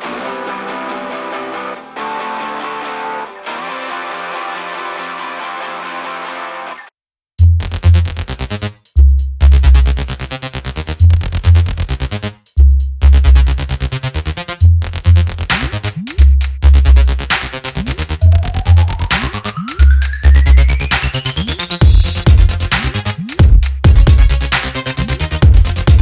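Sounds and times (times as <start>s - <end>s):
electronic dance music: 13.2s - 26.0s
rising synth sweep: 17.2s - 23.4s.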